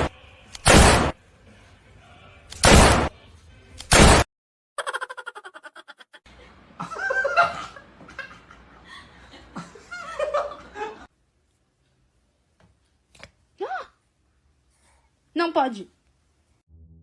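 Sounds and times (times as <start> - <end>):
person laughing: 4.8 - 11.0.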